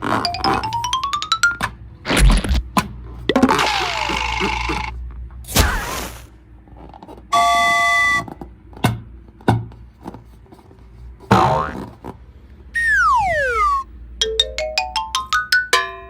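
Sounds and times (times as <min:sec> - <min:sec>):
cartoon swish: 0:05.5 - 0:06.3, 0:12.8 - 0:13.9
rising sweep: 0:12.8 - 0:13.9.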